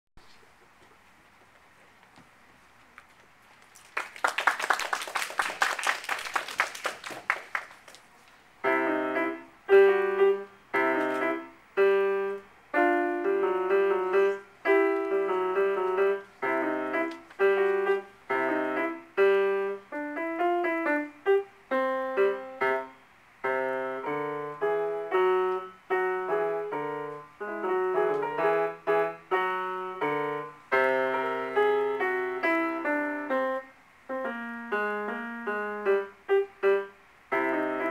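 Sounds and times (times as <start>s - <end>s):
people clapping: 3.0s - 8.2s
piano piece: 4.4s - 37.9s.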